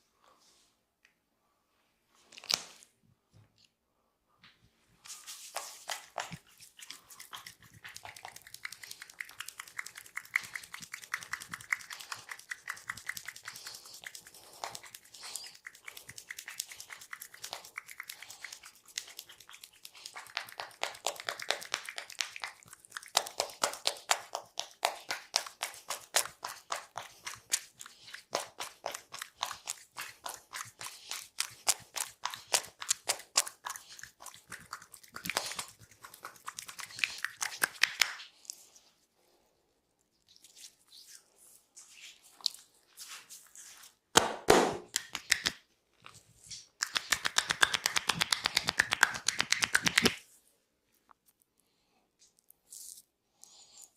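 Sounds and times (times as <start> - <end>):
hands tapping on body: 46.8 - 50.2.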